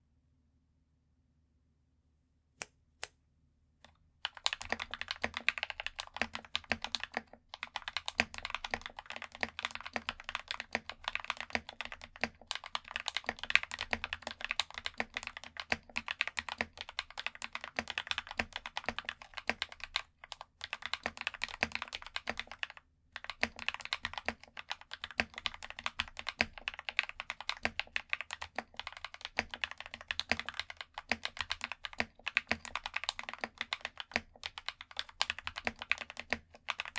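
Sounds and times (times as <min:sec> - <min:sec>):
fast mechanical keyboard typing: 0:04.2 - 0:36.9.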